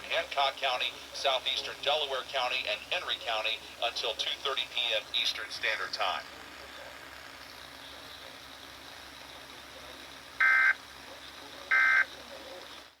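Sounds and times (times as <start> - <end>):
buzzy digital data bursts: 10.4 - 10.8.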